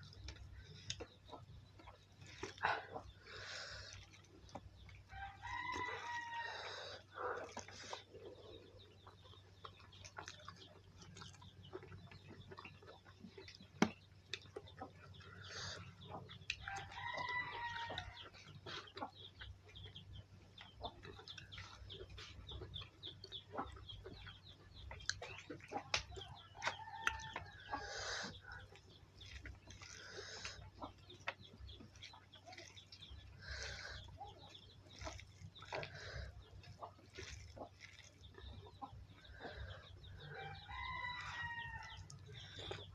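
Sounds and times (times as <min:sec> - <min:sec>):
rooster crowing: 0:05.2 - 0:06.8
chickens clucking: 0:05.9 - 0:42.9
eating clicks and smacks: 0:07.4 - 0:15.3, 0:16.1 - 0:40.2.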